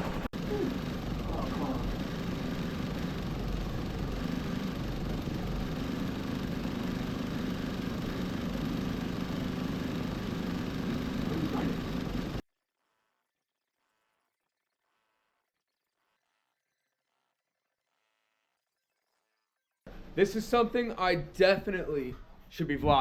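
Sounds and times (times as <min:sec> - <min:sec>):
embroidery machine running: 0:00.0 - 0:12.4.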